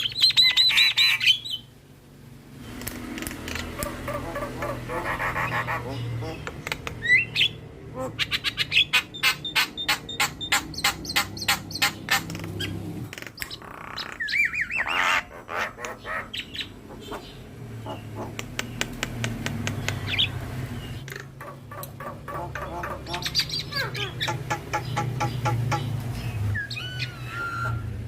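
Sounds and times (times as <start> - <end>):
harsh clicking bird chatter: 0.0 - 1.6, 2.8 - 7.6, 8.2 - 27.8
bird singing: 0.0 - 1.7, 3.6 - 28.0
bird squawks and calls: 0.0 - 1.7, 3.6 - 12.8, 13.4 - 18.4, 21.0 - 25.9, 26.5 - 28.0
warbled bird whistle: 26.5 - 28.0.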